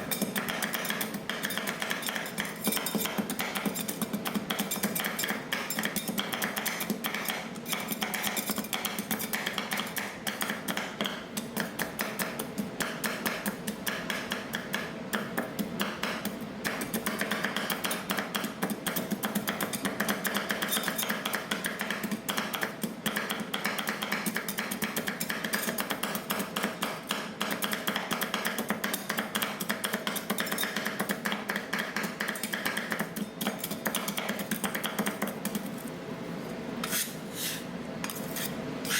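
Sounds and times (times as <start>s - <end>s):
metal spatulas tapping on steel plate: 0.1s - 14.2s.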